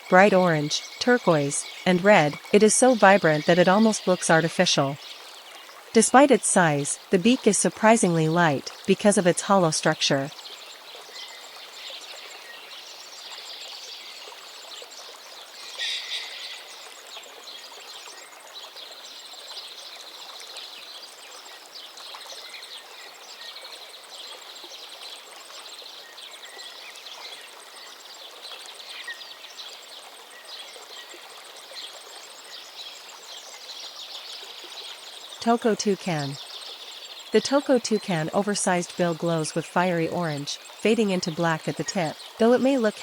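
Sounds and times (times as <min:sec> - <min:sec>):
small birds calling and trilling: 0:00.0 - 0:43.0
hiss of running water: 0:10.8 - 0:17.6.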